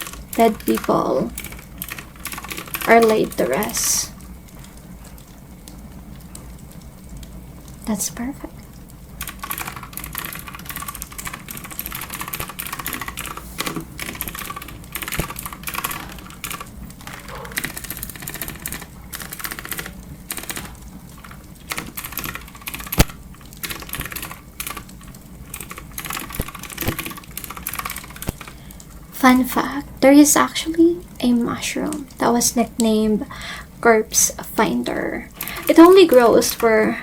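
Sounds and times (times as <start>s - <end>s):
clicky keyboard typing: 0.0s - 6.4s, 9.2s - 29.0s, 34.8s - 37.0s.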